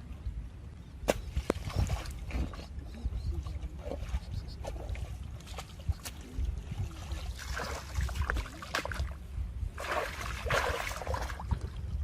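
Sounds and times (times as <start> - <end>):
water sloshing and splashing: 1.3 - 2.7, 3.7 - 12.0.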